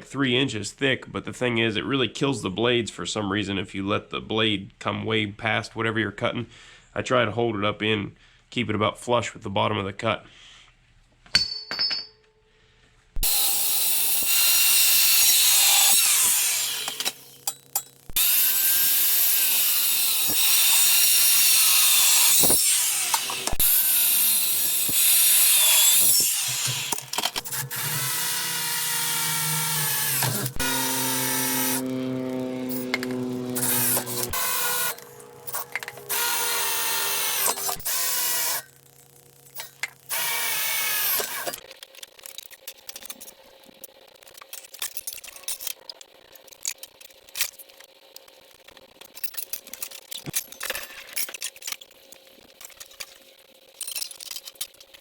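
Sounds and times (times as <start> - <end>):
blade screeching through metal: 13.2 - 17.5, 18.2 - 38.8
saw motor whining: 13.2 - 41.6.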